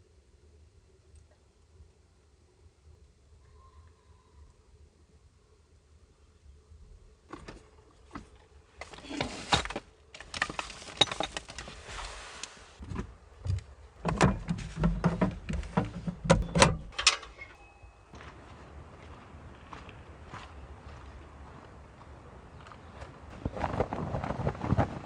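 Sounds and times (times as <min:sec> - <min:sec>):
rustling: 0:07.3 - 0:13.8
knocks and clunks of objects: 0:12.8 - 0:17.6.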